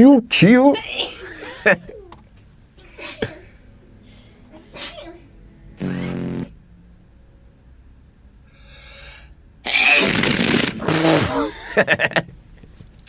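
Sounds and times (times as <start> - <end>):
person sneezing: 0.7 - 2.1, 2.8 - 3.6, 4.6 - 5.2, 9.7 - 11.8
person breathing in: 8.5 - 9.4.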